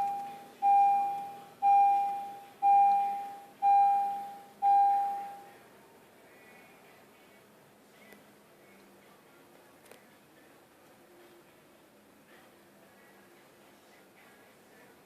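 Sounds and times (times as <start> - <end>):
car warning chime: 0.0 - 5.5.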